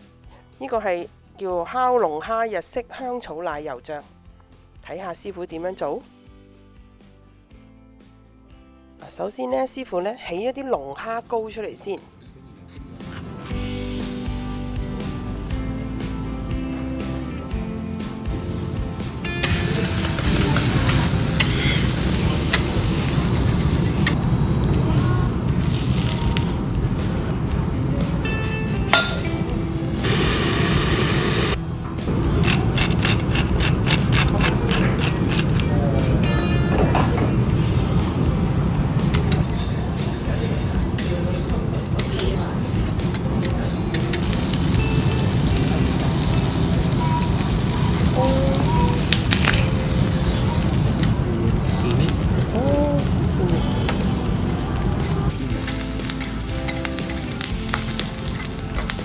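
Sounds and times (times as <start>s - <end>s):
lobster sizzling on a griddle: 18.3s - 27.2s, 29.0s - 35.6s, 39.1s - 59.0s.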